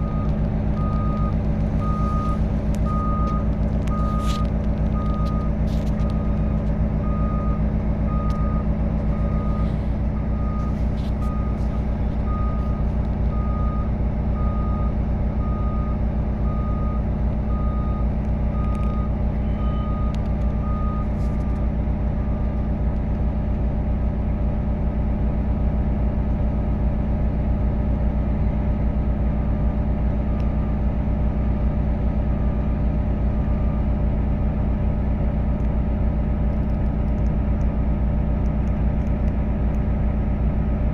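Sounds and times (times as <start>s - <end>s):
reversing alarm beeping: 0.0s - 21.1s
diesel engine running: 0.0s - 40.9s.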